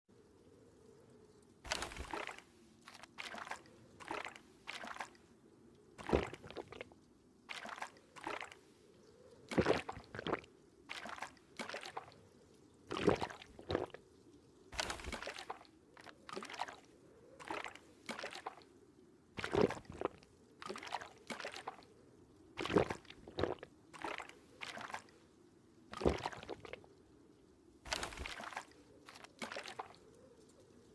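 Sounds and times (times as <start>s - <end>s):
person gulping water: 1.7s - 5.2s, 6.0s - 8.6s, 9.5s - 12.1s, 12.9s - 14.0s, 14.8s - 16.8s, 17.4s - 18.6s, 19.4s - 21.9s, 22.6s - 25.1s, 25.9s - 27.0s, 27.9s - 30.0s.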